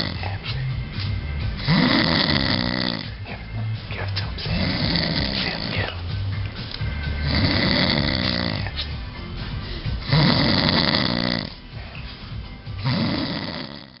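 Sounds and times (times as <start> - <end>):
man snoring heavily: 0.0 - 0.4, 1.5 - 3.2, 4.4 - 6.0, 7.0 - 9.0, 9.7 - 11.8, 12.8 - 14.0.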